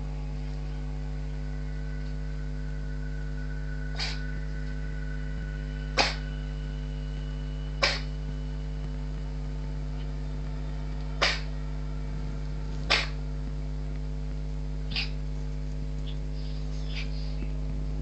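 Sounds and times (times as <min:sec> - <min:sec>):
steady low hum: 0:00.0 - 0:18.0
cat sneezing: 0:03.9 - 0:04.2, 0:06.0 - 0:06.2, 0:07.8 - 0:08.1, 0:11.2 - 0:11.5, 0:12.9 - 0:13.2, 0:14.9 - 0:15.2.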